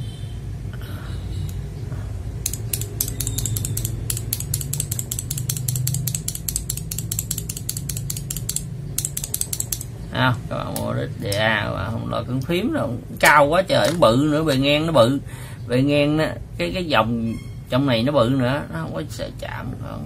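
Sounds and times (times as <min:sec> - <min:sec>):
mechanical keyboard keys clacking: 0:02.4 - 0:09.9.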